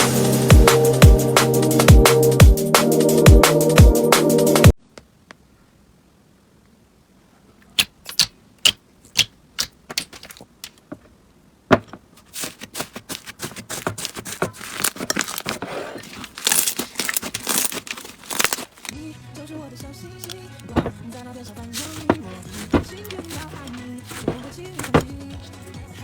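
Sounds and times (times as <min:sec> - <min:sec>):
slime popping and crackling: 0:07.8 - 0:10.8, 0:12.4 - 0:19.0
slime snapping: 0:07.8 - 0:10.8.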